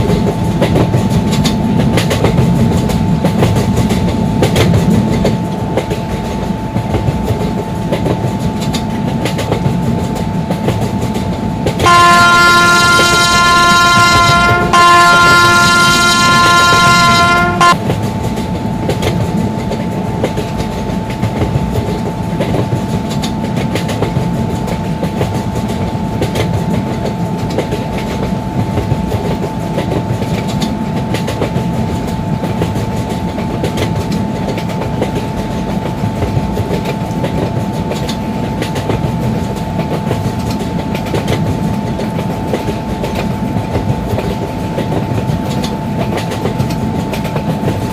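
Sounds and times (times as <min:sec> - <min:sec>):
train wheels clicking over rail joints: 0:00.0 - 0:47.9
train horn blowing: 0:11.8 - 0:17.8.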